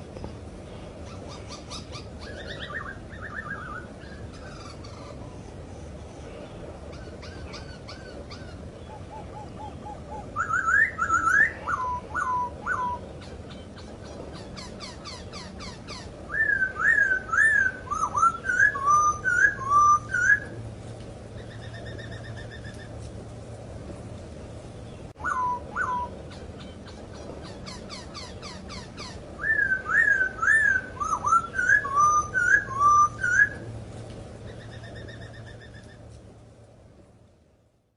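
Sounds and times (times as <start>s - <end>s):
laughingthrush whistled song: 8.9s - 13.0s, 16.3s - 20.6s, 25.2s - 26.2s, 29.4s - 33.6s.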